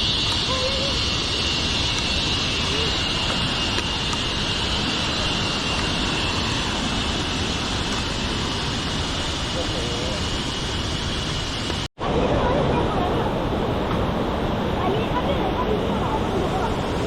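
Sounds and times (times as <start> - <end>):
high even buzz: 0.0 - 11.9.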